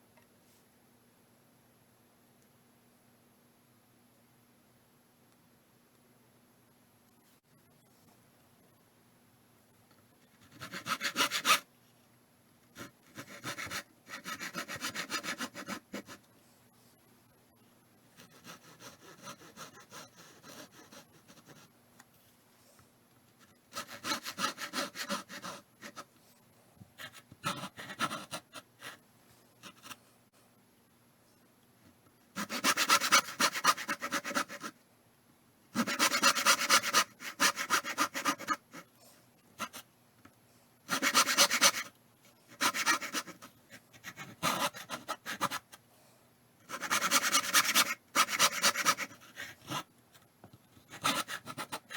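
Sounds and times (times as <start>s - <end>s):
handsaw cutting wood: 10.6s - 11.6s, 12.8s - 16.1s, 23.7s - 26.0s, 32.4s - 34.7s, 35.8s - 38.8s, 40.9s - 41.9s, 42.5s - 43.4s, 46.7s - 49.8s.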